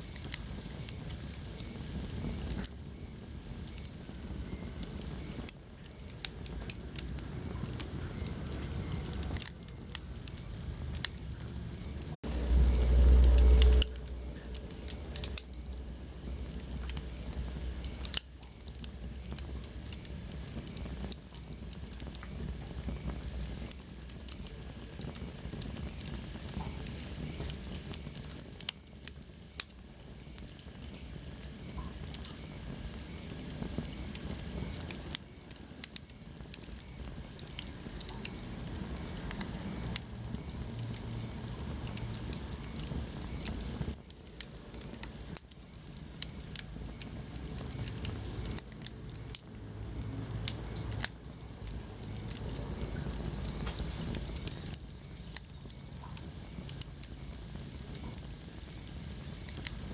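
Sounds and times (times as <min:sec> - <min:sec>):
wood fire crackling and popping: 0:00.0 - 0:59.9
low rumble: 0:06.5 - 0:20.5.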